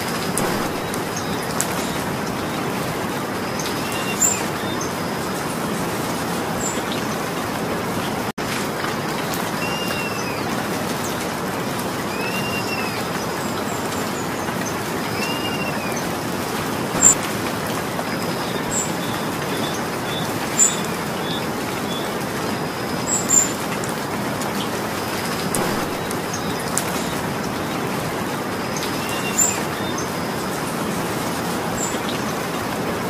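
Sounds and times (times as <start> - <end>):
steady rain falling: 0.0 - 33.0
bird whistling and chirping: 12.1 - 13.0, 15.2 - 16.0.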